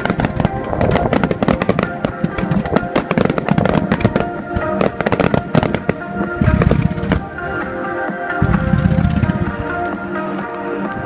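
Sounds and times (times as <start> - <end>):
fireworks bangs and crackles: 0.0 - 10.5
music with held notes: 0.0 - 11.0.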